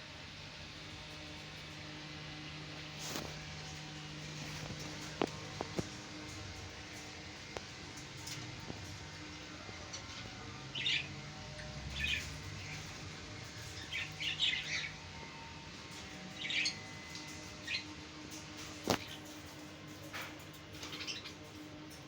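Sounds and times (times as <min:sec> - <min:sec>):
parrots chirping: 0:13.6 - 0:15.1, 0:16.4 - 0:17.9.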